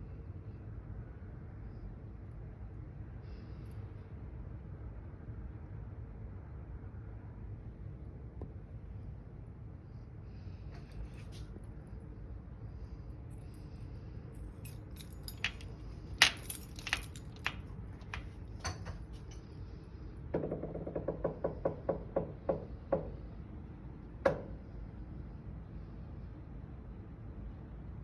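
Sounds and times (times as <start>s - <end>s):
key jingling: 14.4s - 19.3s.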